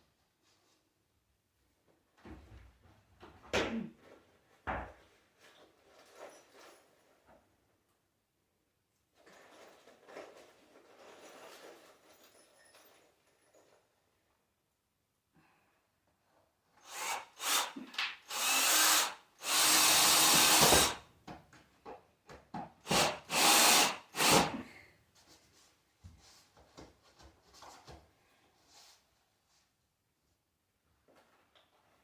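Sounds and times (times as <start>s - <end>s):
power drill running in bursts: 16.8s - 21.0s, 22.8s - 24.5s.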